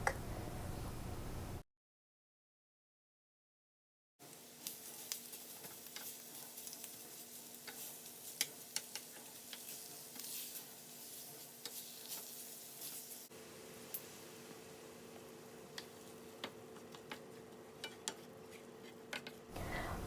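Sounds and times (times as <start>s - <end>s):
fat crackling and popping: 4.2s - 20.0s
sausage sizzling in a frying pan: 4.2s - 20.0s.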